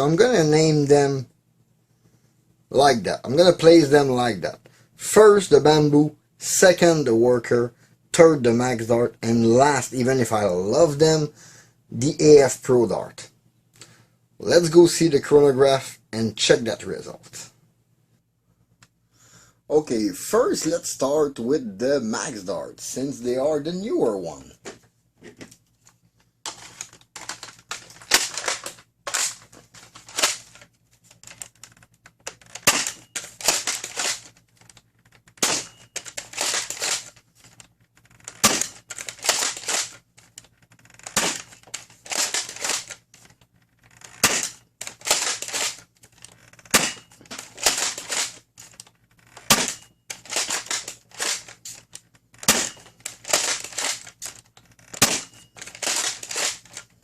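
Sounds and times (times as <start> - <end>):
foam-dart blaster firing: 32.6 - 34.2, 35.4 - 37.1, 38.4 - 40.0, 41.1 - 41.5, 44.2 - 45.8, 49.5 - 51.5, 52.4 - 54.0.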